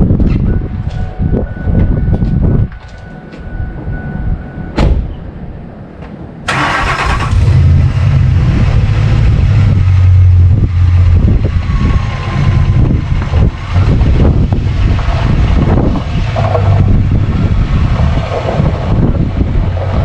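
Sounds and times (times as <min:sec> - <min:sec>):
engine cranking and rumbling: 0:06.5 - 0:20.0.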